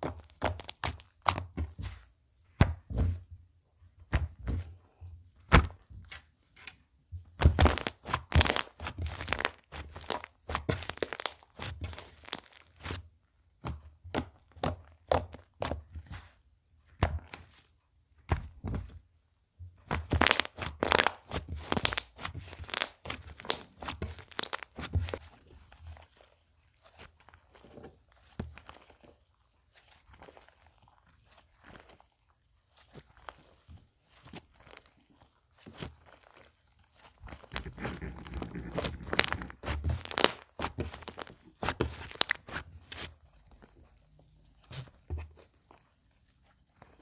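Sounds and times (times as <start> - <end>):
slime crackling and popping: 7.6 - 12.8, 20.1 - 25.2, 37.4 - 42.6.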